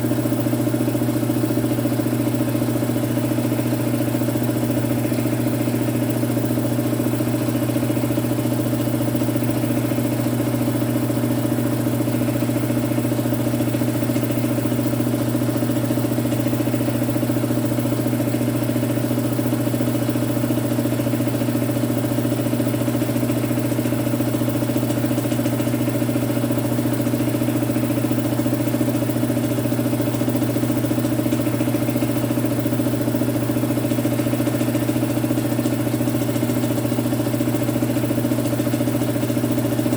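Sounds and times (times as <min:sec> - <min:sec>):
electric compressor humming: 0:00.0 - 0:17.2, 0:37.0 - 0:39.9.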